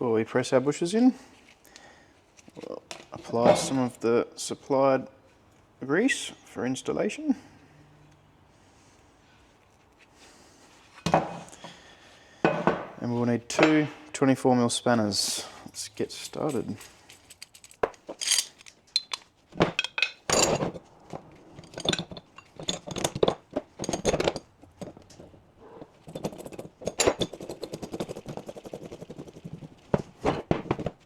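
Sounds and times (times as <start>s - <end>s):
metal parts clinking and knocking: 16.4s - 28.4s.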